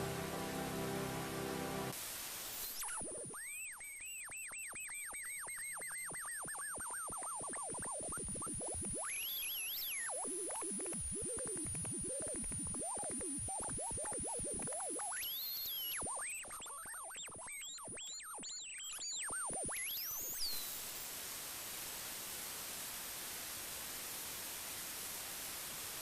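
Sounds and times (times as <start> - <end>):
electronic pitch glides: 0.0 - 2.0
steady high whine: 0.0 - 2.0.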